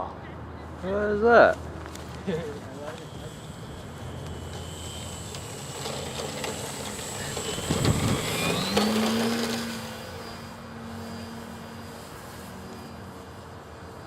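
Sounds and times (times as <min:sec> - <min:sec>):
model airplane engine buzzing: 0:02.0 - 0:14.0
wind buffeting microphone: 0:06.6 - 0:09.0.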